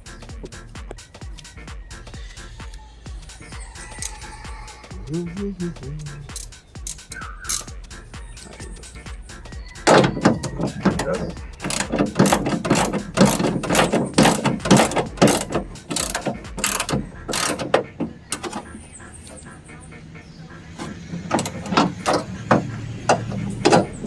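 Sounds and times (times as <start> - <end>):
ratcheting hand tool: 6.3 - 7.7, 8.4 - 8.9, 9.8 - 19.5, 20.8 - 24.0
sharp mechanical clicks and knocks: 6.3 - 7.7, 9.8 - 19.5, 20.8 - 24.0.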